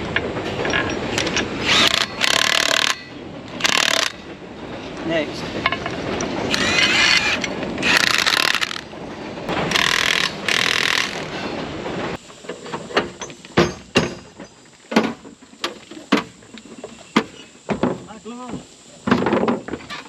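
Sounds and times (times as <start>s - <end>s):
machinery squealing and grinding: 6.3s - 8.9s.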